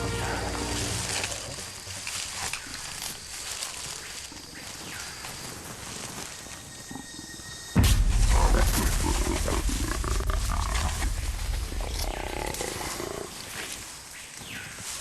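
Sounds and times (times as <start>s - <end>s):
jaguar growling: 8.4s - 13.5s.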